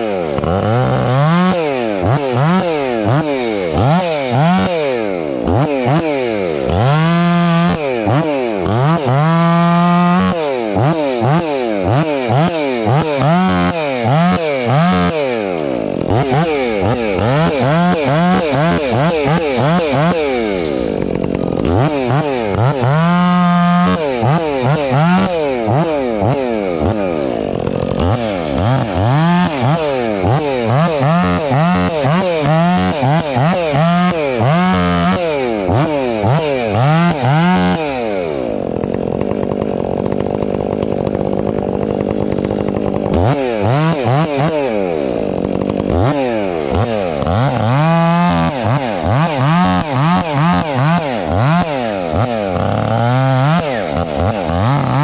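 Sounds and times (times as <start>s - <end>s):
chainsaw revving through wood: 0.0s - 55.0s.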